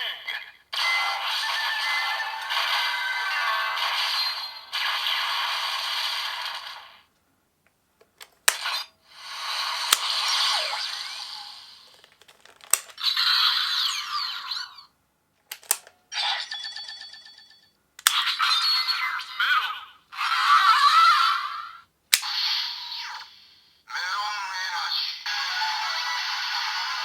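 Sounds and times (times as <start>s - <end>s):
toy electronic sound effects: 8.7s - 11.9s
lock mechanism clicks: 12.2s - 13.0s, 15.4s - 16.0s, 18.0s - 18.2s.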